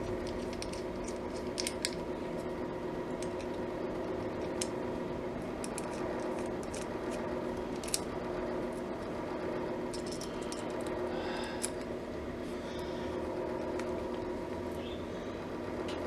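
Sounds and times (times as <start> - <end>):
steady low hum: 0.0 - 16.0
clicks of small metal parts: 0.3 - 2.0, 5.6 - 8.1, 9.9 - 10.9.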